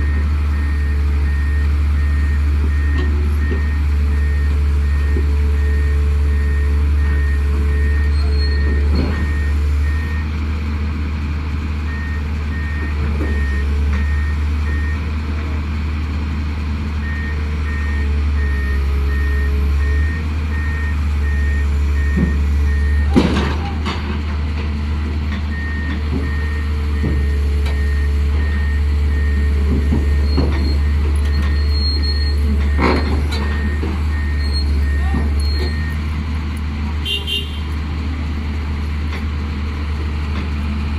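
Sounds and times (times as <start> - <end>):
diesel engine under load: 0.0 - 40.9
reversing alarm beeping: 17.1 - 23.2, 25.5 - 36.0.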